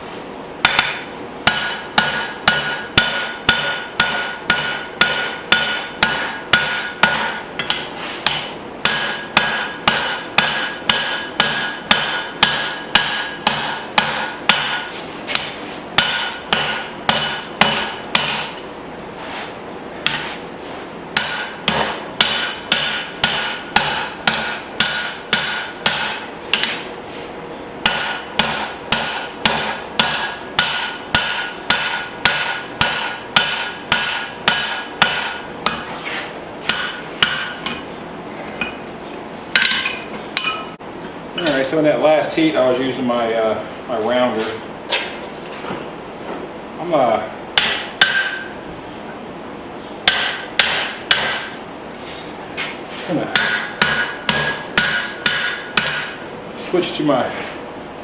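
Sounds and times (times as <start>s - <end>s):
hammer striking steel on anvil: 0.6s - 18.6s, 20.0s - 20.3s, 21.2s - 26.9s, 27.8s - 35.9s, 36.6s - 37.9s, 39.5s - 40.8s, 47.6s - 48.6s, 50.0s - 51.6s, 53.3s - 56.2s
anvil ringing: 0.7s - 14.8s, 39.5s - 40.8s.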